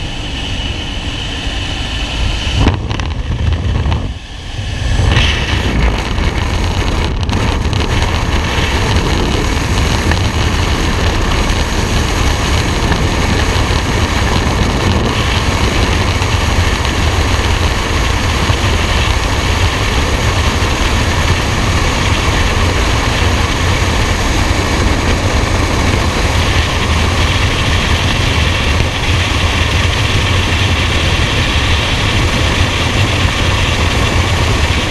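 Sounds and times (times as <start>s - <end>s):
large engine rumbling: 0.0s - 34.9s.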